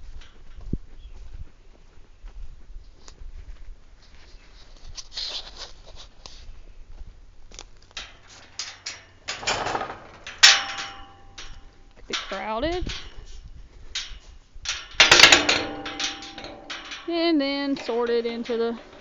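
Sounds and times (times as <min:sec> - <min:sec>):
rustling: 0:00.0 - 0:19.0
metallic clank: 0:08.0 - 0:19.0.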